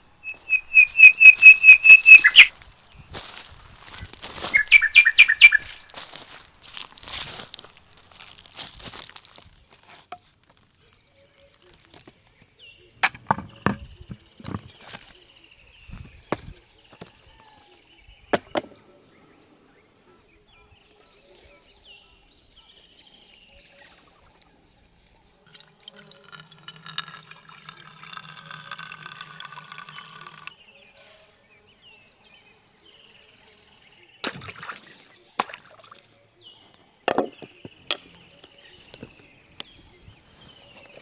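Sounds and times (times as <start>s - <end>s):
water pouring: 24.0s - 30.5s.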